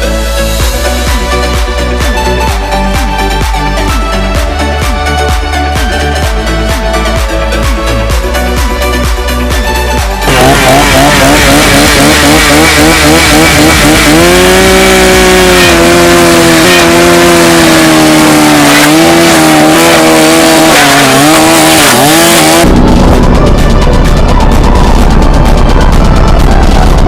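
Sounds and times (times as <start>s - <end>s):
music with a beat: 0.0s - 27.0s
chainsaw engine revving: 10.2s - 22.7s.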